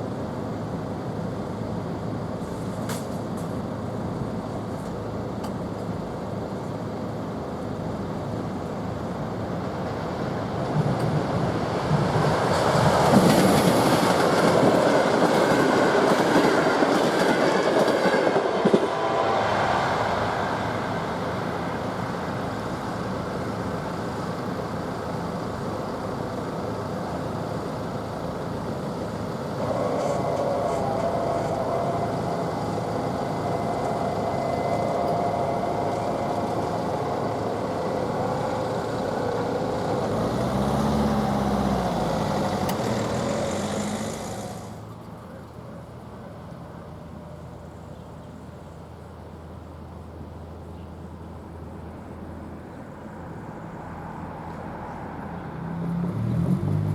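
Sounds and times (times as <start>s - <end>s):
train wheels rattling on rails: 0.5s - 45.2s.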